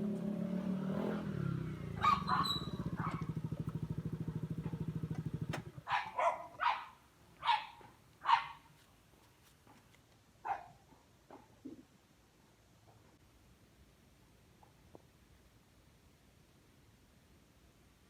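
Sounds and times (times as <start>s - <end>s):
scooter engine idling: 0.0s - 6.5s
dog barking: 2.0s - 3.4s, 5.8s - 8.7s, 10.4s - 11.0s.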